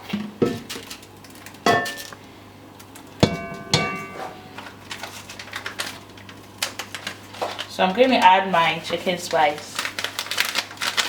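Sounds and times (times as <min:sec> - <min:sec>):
cookware clanking: 0:01.7 - 0:02.2, 0:03.2 - 0:04.7.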